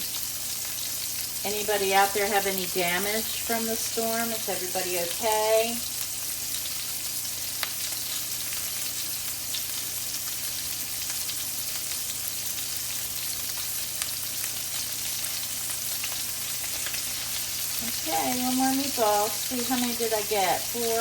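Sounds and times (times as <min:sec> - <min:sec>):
meatballs sizzling in a pan: 0:00.0 - 0:21.0
low steady hum: 0:01.2 - 0:06.6, 0:15.0 - 0:21.0.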